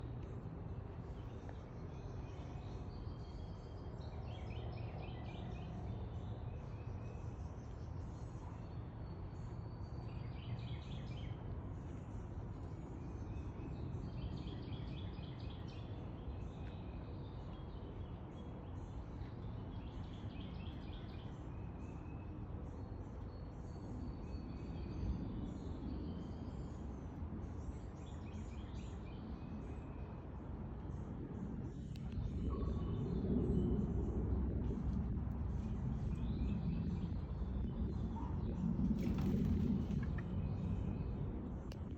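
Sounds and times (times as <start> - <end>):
low background noise: 0.0 - 41.9
small birds calling and singing: 0.0 - 41.9.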